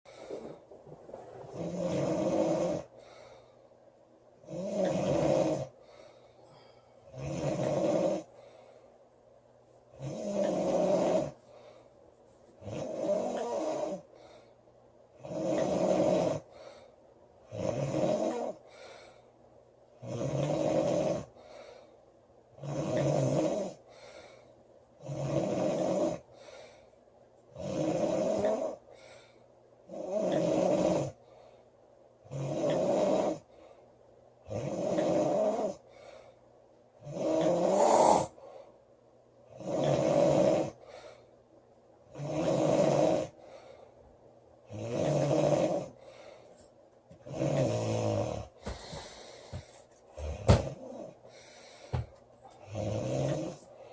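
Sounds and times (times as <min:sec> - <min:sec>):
faint breath: 0:00.1 - 0:01.6, 0:02.9 - 0:03.9, 0:05.8 - 0:07.2, 0:08.3 - 0:09.2, 0:11.4 - 0:12.2, 0:14.0 - 0:14.8, 0:16.5 - 0:17.2, 0:18.6 - 0:19.5, 0:21.3 - 0:22.2, 0:23.8 - 0:24.7, 0:26.3 - 0:27.1, 0:28.8 - 0:29.6, 0:31.2 - 0:31.9, 0:33.4 - 0:34.1, 0:35.8 - 0:36.6, 0:37.7 - 0:38.9, 0:40.8 - 0:41.5, 0:43.4 - 0:44.2, 0:46.0 - 0:46.8, 0:48.6 - 0:50.5, 0:51.1 - 0:52.7
woman snoring: 0:01.4 - 0:02.9, 0:04.4 - 0:05.7, 0:07.1 - 0:08.3, 0:10.0 - 0:11.4, 0:12.6 - 0:14.1, 0:15.2 - 0:16.4, 0:17.5 - 0:18.6, 0:20.0 - 0:21.3, 0:22.6 - 0:23.8, 0:25.0 - 0:26.2, 0:27.6 - 0:28.8, 0:29.9 - 0:31.2, 0:32.3 - 0:33.4, 0:34.5 - 0:35.8, 0:37.0 - 0:38.4, 0:39.5 - 0:40.8, 0:42.1 - 0:43.4, 0:44.7 - 0:46.0, 0:47.3 - 0:49.3, 0:52.6 - 0:53.7.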